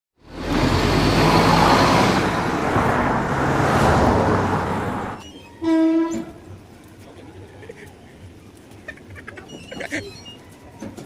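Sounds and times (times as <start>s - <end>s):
road vehicle rumble: 0.2s - 11.0s.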